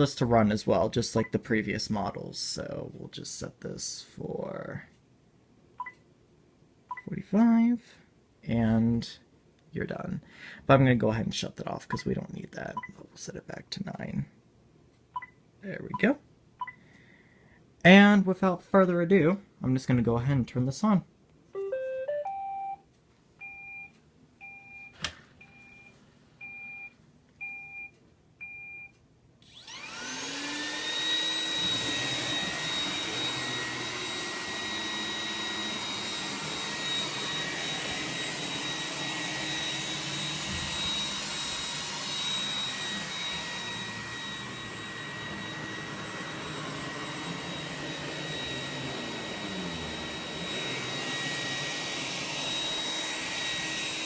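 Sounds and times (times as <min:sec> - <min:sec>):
short beeps: 0:21.6 - 0:22.8
vacuum fan whine: 0:29.4 - 0:54.0.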